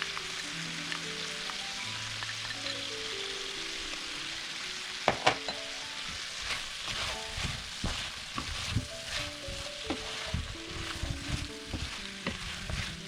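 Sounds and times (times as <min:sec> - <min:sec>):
food sizzling in a pan: 0:00.0 - 0:13.0
spoon scraping and knocking pan: 0:05.1 - 0:13.0.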